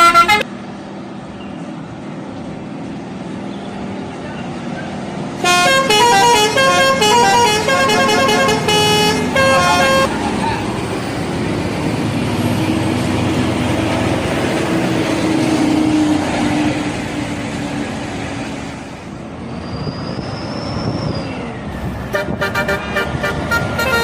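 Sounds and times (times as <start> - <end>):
multi-tone bus horn pulses: 0.0 - 0.5, 5.4 - 10.2, 22.1 - 24.0
road vehicle noise: 0.0 - 24.0.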